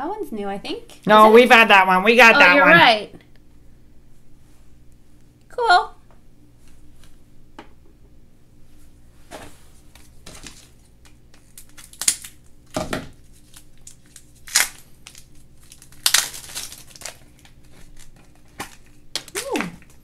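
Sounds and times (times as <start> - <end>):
packaging crinkling and tearing: 9.9 - 20.0.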